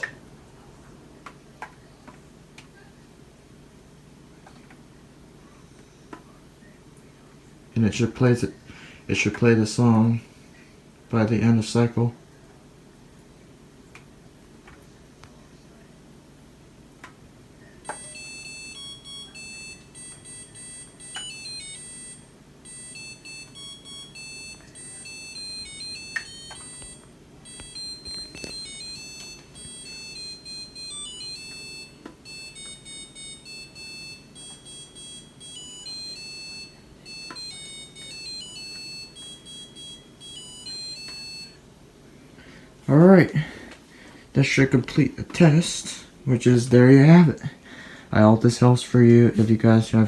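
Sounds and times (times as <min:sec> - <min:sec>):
dishwasher beeping melody: 0:17.8 - 0:41.7.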